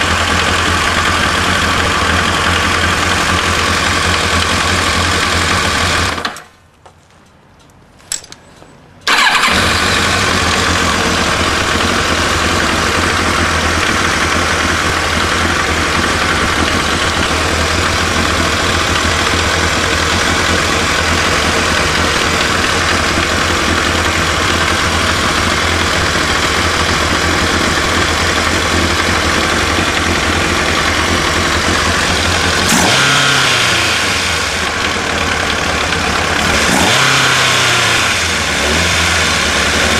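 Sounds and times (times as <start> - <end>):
motorcycle engine idling: 0.0 - 6.2, 9.0 - 39.9
clicks: 6.2 - 9.2
engine revving: 9.1 - 39.9.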